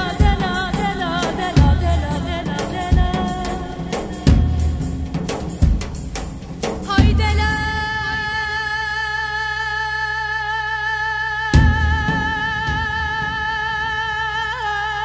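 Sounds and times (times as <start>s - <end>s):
woman singing folk song: 0.0s - 4.9s, 6.9s - 15.0s
heavy drum strokes: 0.0s - 8.6s, 11.6s - 13.9s.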